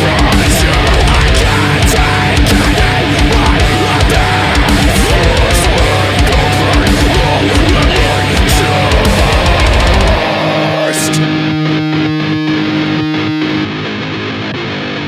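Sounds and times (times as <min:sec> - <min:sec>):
drums: 0:00.0 - 0:11.3
distorted electric guitars: 0:00.0 - 0:15.0.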